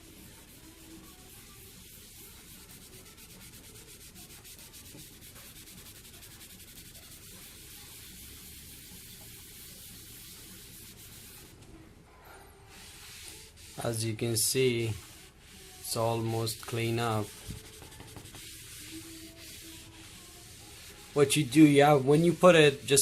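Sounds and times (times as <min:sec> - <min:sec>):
scrubbing fridge surface with paste: 0:12.8 - 0:23.0.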